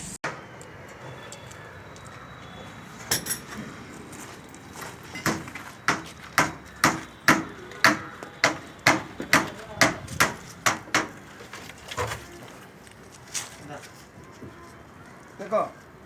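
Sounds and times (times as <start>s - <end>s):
hammer blows: 5.2s - 11.2s.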